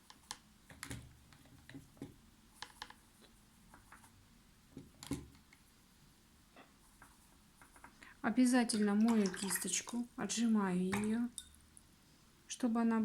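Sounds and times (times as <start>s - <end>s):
paintbrush tapping and scraping: 0.0s - 5.6s, 6.6s - 8.0s.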